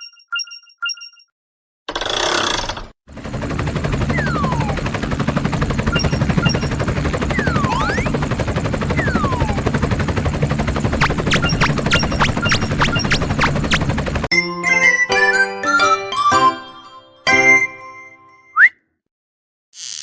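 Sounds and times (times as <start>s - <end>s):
high bell-like dings: 0.0s - 1.3s
falling whistle glides: 9.0s - 9.7s
fast mechanical rattling: 10.9s - 14.3s
low hum: 10.9s - 14.3s.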